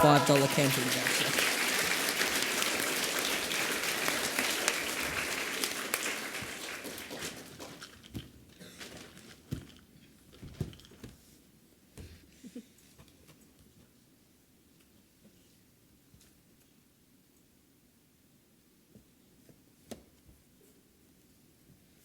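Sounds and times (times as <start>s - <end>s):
children applauding: 0.0s - 7.9s.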